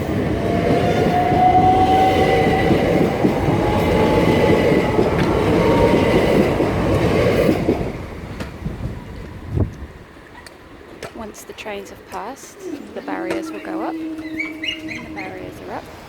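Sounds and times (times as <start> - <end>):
train wheels rumbling on rails: 0.0 - 16.0
thin steady whining tones: 11.3 - 16.0.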